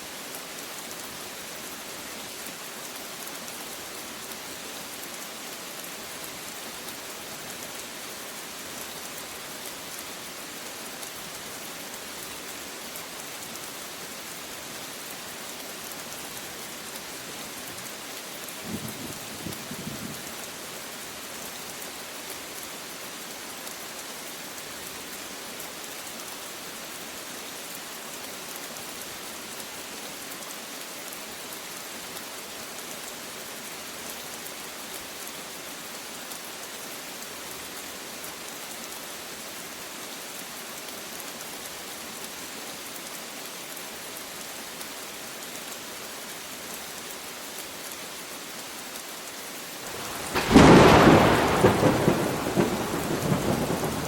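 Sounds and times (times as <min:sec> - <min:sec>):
steady rain falling: 0:00.0 - 0:54.0
thunderclap rumbling: 0:49.9 - 0:54.0.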